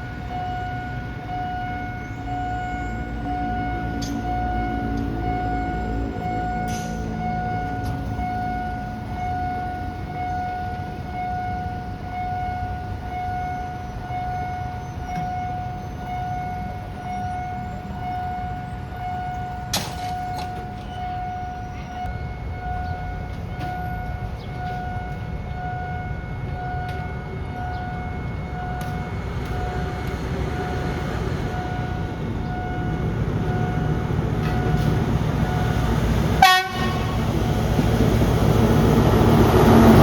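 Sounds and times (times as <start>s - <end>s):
level crossing alarm tone: 0.0s - 40.0s.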